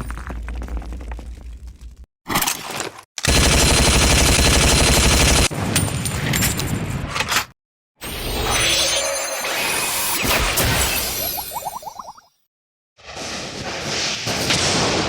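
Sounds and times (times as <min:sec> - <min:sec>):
rapid automatic gunfire: 0:03.3 - 0:05.5.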